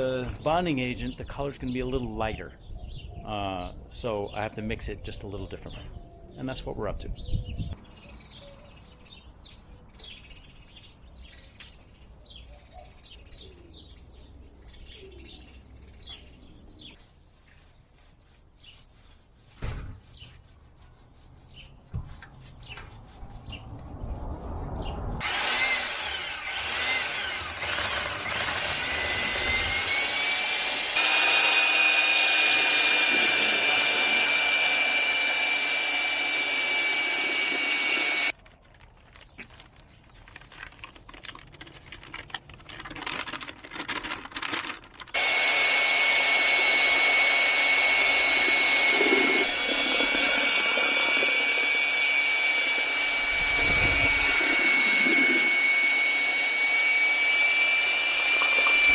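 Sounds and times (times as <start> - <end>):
power tool motor whining: 25.2 - 38.4, 45.1 - 58.9
clicks and scrapes: 38.3 - 45.2.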